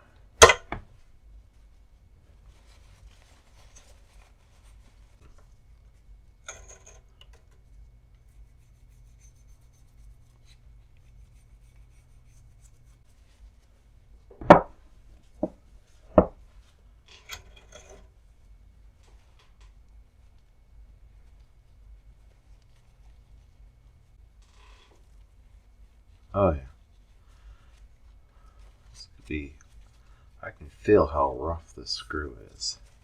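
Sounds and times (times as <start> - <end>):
sharp metal knocks: 0.4 - 0.8.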